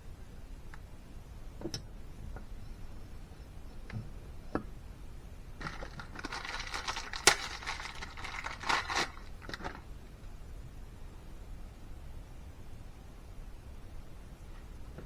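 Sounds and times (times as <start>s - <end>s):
scraping on engine parts: 5.6s - 9.8s.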